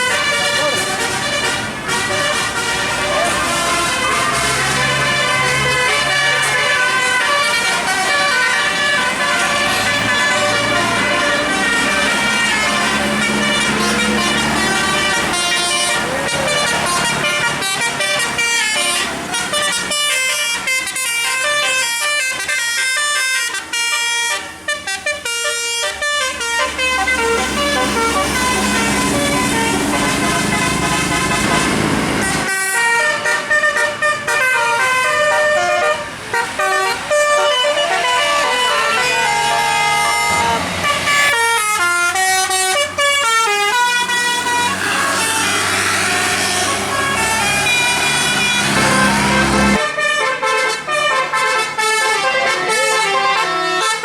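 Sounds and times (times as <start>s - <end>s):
musical bus air horns: 0.0s - 54.0s.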